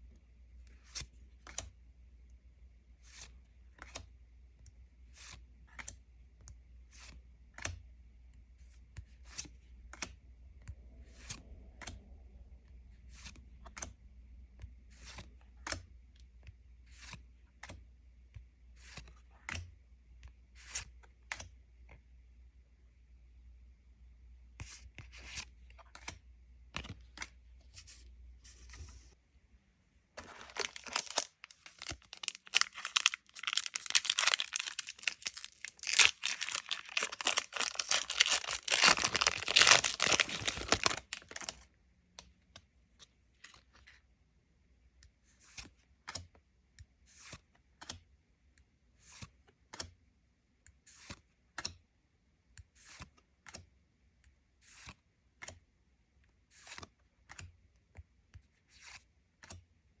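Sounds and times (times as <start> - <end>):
plastic wrapping torn and crinkled: 30.2 - 41.6.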